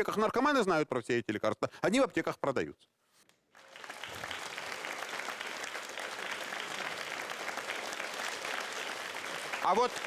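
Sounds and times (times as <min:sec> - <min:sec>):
audience applauding: 0:03.6 - 0:10.0.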